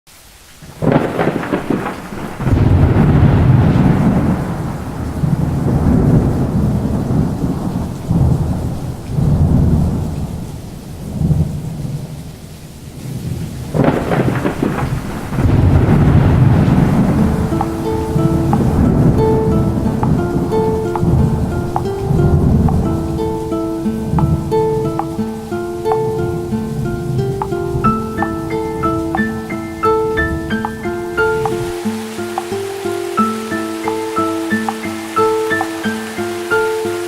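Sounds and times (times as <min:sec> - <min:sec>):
steady rain: 0:00.1 - 0:37.0
rolling thunder: 0:00.6 - 0:12.3, 0:13.0 - 0:25.5.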